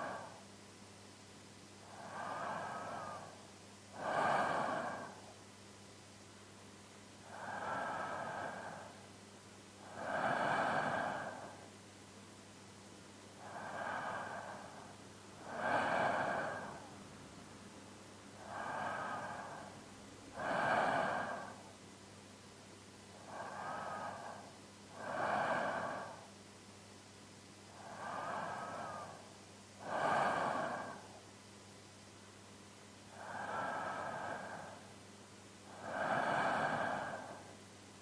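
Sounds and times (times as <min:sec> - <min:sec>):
man's sleep breathing: 0:00.0 - 0:00.5, 0:01.8 - 0:05.4, 0:07.2 - 0:09.1, 0:09.8 - 0:11.7, 0:13.4 - 0:17.1, 0:18.4 - 0:21.8, 0:23.1 - 0:26.4, 0:27.7 - 0:31.3, 0:33.1 - 0:34.9, 0:35.7 - 0:37.6.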